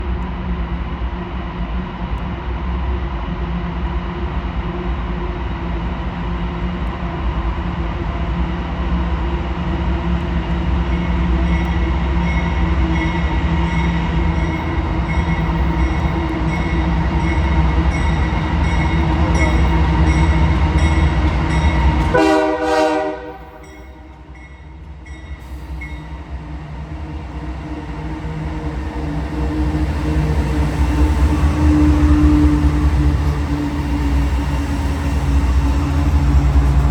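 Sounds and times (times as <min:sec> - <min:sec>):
diesel locomotives rumbling past: 0:00.0 - 0:36.9
train horn note: 0:22.1 - 0:24.2.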